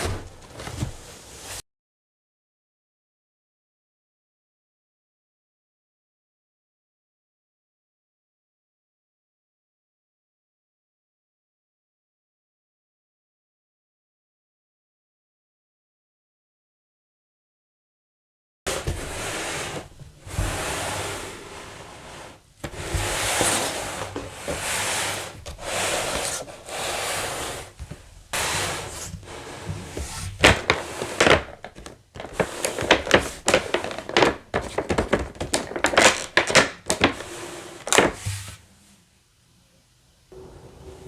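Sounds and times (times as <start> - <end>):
packaging rustling: 30.0 - 38.5.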